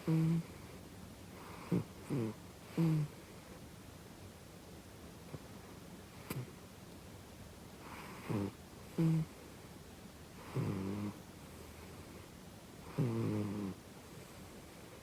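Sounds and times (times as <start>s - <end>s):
cat snoring: 0.0s - 0.7s, 1.4s - 3.2s, 7.8s - 9.4s, 10.4s - 11.2s, 12.8s - 13.8s.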